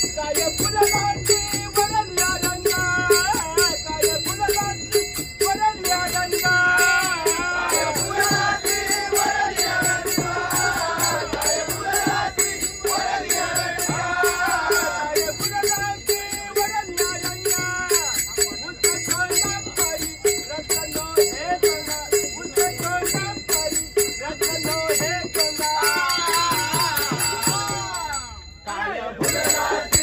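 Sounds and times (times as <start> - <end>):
hand cymbals clashing: 0.0 - 30.0
person singing devotional song: 0.0 - 30.0.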